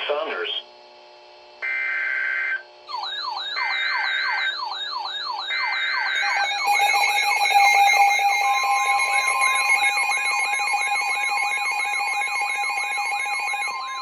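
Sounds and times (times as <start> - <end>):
electronic siren sweeping: 1.6 - 14.0
steady alert tones: 2.9 - 14.0
data header tone bursts: 5.4 - 14.0.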